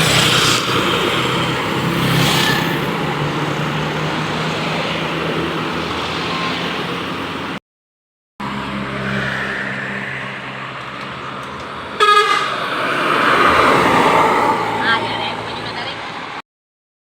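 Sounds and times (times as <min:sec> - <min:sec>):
bus diesel engine running: 0:00.0 - 0:07.6
road and tyre noise: 0:00.0 - 0:07.6, 0:08.4 - 0:16.4.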